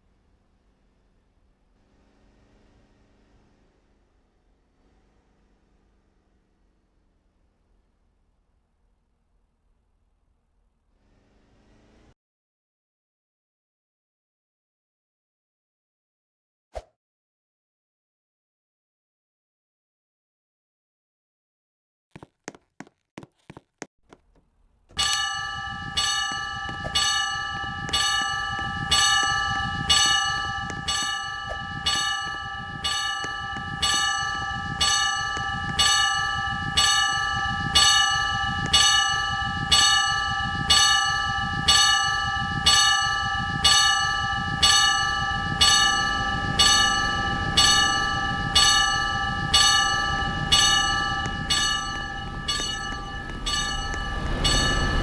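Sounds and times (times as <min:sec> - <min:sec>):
level crossing warning bell: 0:24.9 - 0:55.0
train low rumble: 0:25.0 - 0:55.0.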